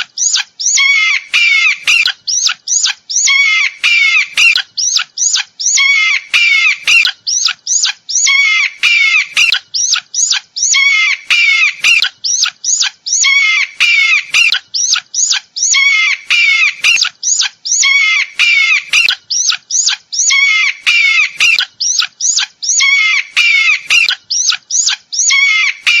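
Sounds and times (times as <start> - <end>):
eagle calling: 0.0 - 26.0.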